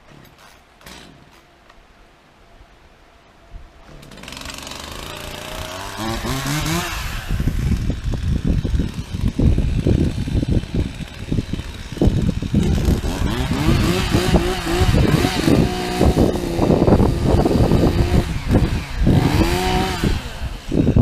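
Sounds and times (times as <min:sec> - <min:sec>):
chainsaw cutting tree: 0:03.9 - 0:21.0.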